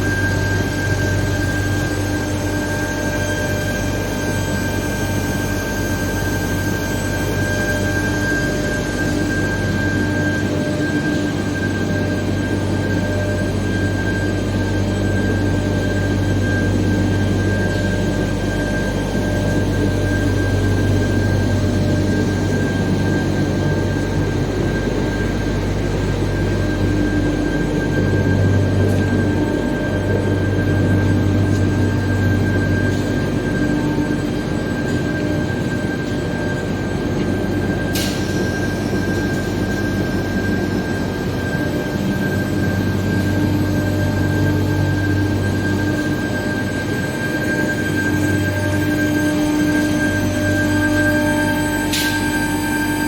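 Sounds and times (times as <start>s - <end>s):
high-pitched whine: 0.0s - 53.0s
industrial hum: 0.0s - 53.0s.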